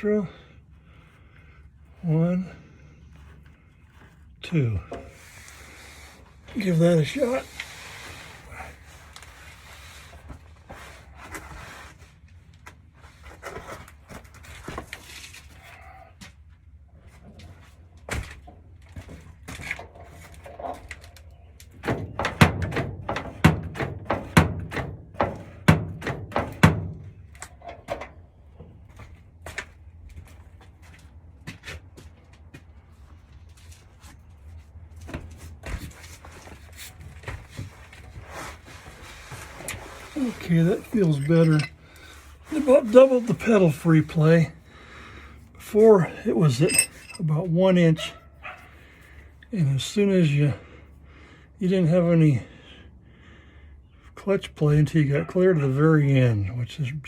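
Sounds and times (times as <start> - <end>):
low steady hum: 40.2 - 43.0, 45.9 - 47.7.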